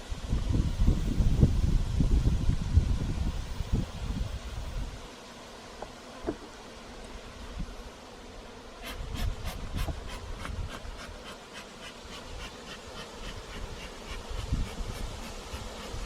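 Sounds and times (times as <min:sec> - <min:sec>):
bees buzzing: 0:04.6 - 0:16.0.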